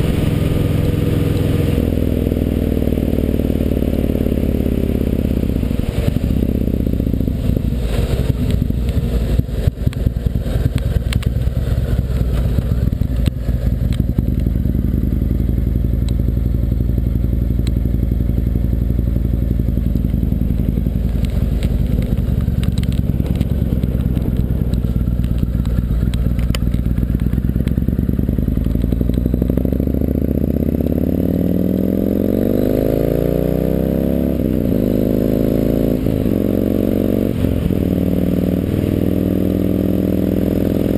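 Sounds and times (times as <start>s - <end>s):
motorcycle engine running: 0.0s - 40.9s
wind noise: 5.4s - 14.5s.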